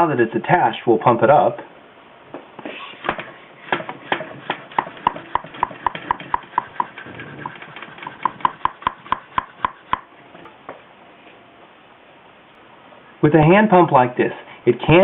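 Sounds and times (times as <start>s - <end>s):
bicycle pump clicking: 5.0s - 10.0s.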